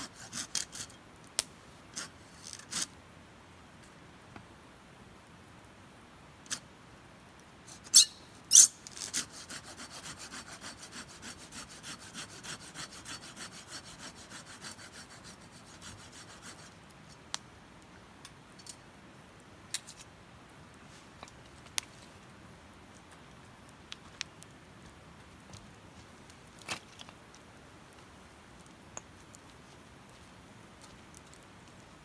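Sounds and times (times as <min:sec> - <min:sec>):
wood fire crackling and popping: 0:30.8 - 0:31.9.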